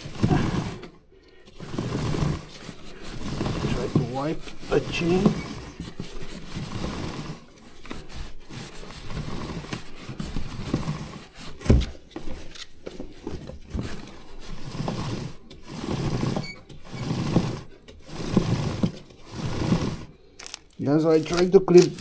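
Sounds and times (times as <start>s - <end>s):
rag wiping a chain: 1.6s - 9.7s.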